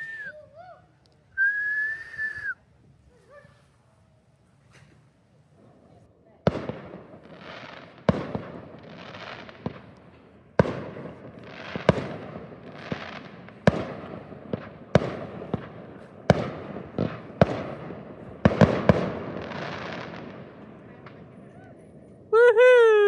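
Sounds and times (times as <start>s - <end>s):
fireworks crackling: 0.0s - 2.6s, 4.6s - 23.0s
fireworks bangs: 6.4s - 23.0s.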